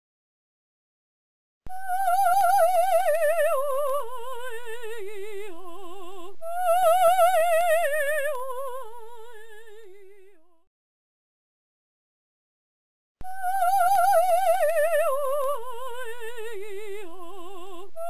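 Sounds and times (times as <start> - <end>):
woman singing operatic line: 1.7 - 10.3, 13.3 - 18.0.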